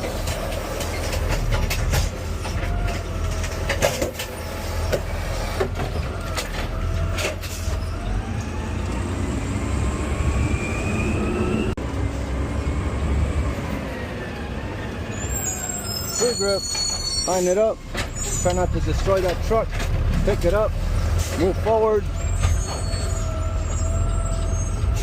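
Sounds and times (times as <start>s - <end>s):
garbage truck engine rumbling: 0.0s - 25.0s
rising whine: 7.8s - 16.0s.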